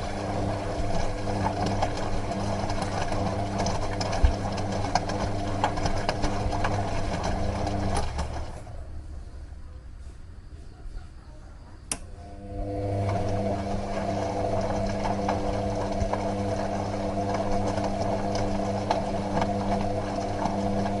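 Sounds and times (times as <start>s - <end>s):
washing machine running: 0.0s - 10.1s, 11.8s - 21.0s
faint low hum: 7.6s - 16.8s.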